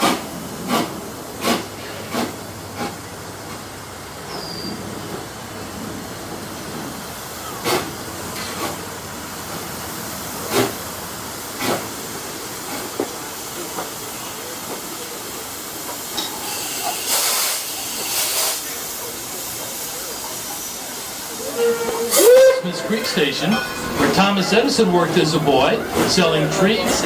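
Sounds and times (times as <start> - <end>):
steam hissing: 0.0 - 27.0
train running noise: 0.0 - 27.0.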